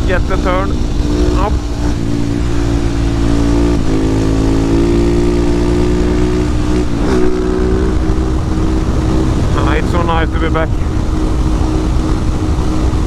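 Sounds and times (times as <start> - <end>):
motorcycle engine revving high: 0.0 - 13.0
wind noise on microphone: 0.0 - 13.0.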